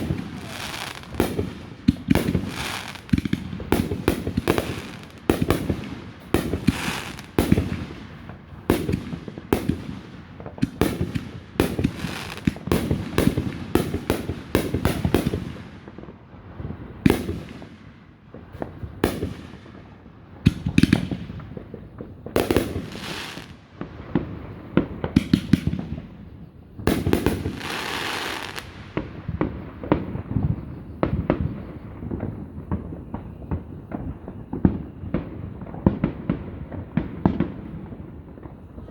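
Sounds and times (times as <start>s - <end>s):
fireworks rushing burst: 0.0s - 16.0s, 20.5s - 31.0s
fireworks bursts and bangs: 0.0s - 38.9s.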